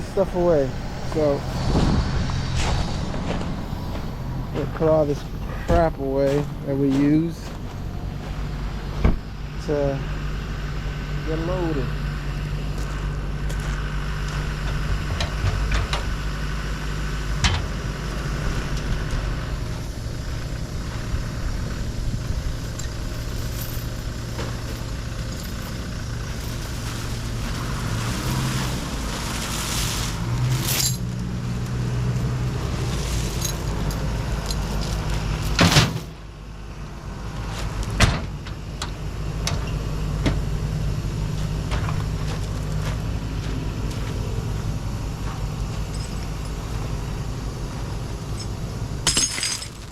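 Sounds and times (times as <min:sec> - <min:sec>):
engine idling: 0:00.0 - 0:29.6, 0:31.1 - 0:49.9
metal clanks and knocks: 0:17.4 - 0:17.8.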